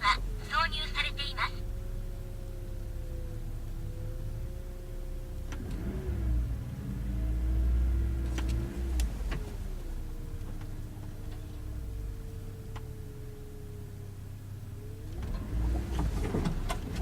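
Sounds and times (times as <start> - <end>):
off-road engine revving: 0.0 - 12.4, 15.0 - 17.0.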